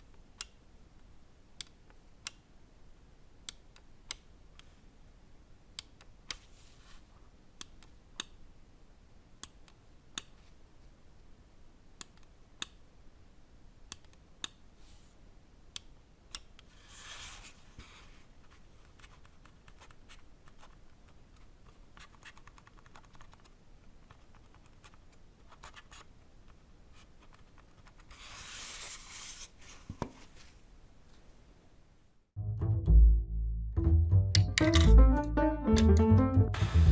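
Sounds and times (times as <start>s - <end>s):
music: 32.4s - 36.9s
mouse button clicks: 34.4s - 36.1s.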